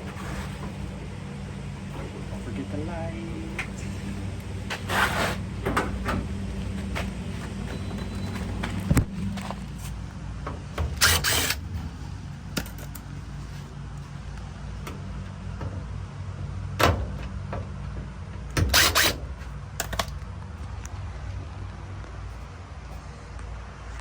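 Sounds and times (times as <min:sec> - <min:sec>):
steady low hum: 0:00.0 - 0:24.0
metal parts and tools rattling: 0:10.8 - 0:11.9.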